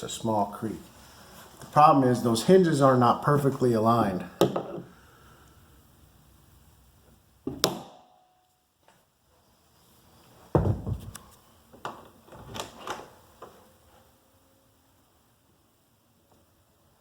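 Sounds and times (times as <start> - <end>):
heavy thump: 10.5 - 11.2
knocks on a door: 10.6 - 11.1.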